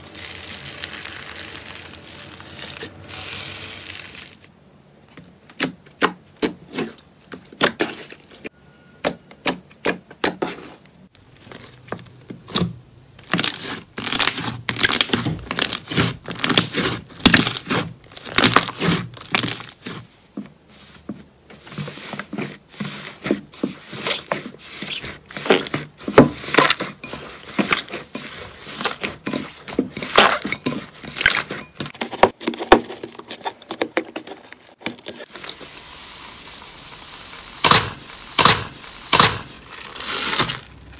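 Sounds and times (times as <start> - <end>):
slime clicking and crackling: 0.0 - 3.0, 13.2 - 19.8.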